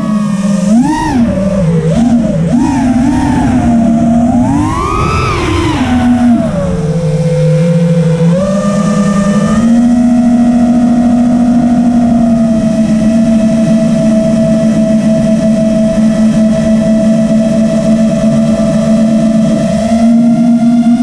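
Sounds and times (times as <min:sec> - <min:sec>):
drone motors whining: 0:00.0 - 0:21.0
rush of air: 0:00.6 - 0:09.5.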